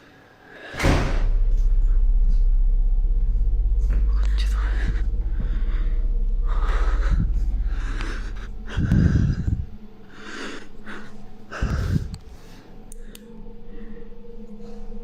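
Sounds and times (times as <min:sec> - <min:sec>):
heavy low thump: 0:00.8 - 0:09.9, 0:11.6 - 0:12.3
low rumble: 0:00.8 - 0:15.0
man breathing hard: 0:04.5 - 0:15.0.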